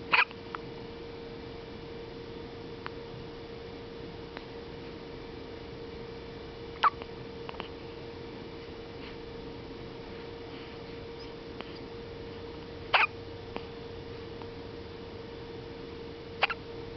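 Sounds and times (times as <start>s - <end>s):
steady background hum: 0.0s - 16.9s
newborn baby hiccuping: 6.8s - 7.6s, 12.9s - 13.2s, 16.4s - 16.6s.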